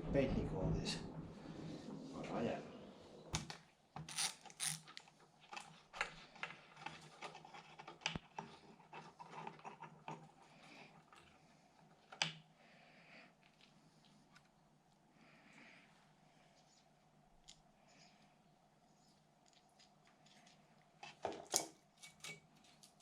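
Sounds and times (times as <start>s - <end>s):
small clicks taps and scrapes: 3.4s - 11.4s, 19.4s - 23.0s.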